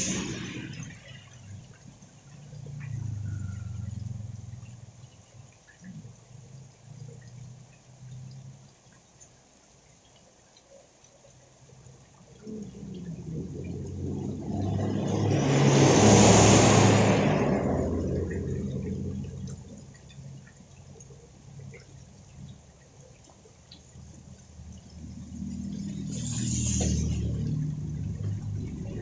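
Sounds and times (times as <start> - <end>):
tyre hiss on wet road: 0.0 - 1.1, 15.0 - 17.7, 25.7 - 27.8.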